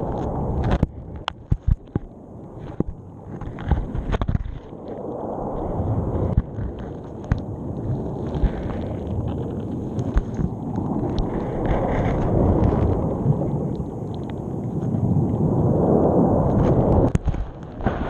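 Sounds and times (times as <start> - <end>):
muffled underwater sea rumble: 0.0 - 18.0
camera knocking on sea bed: 0.7 - 2.1.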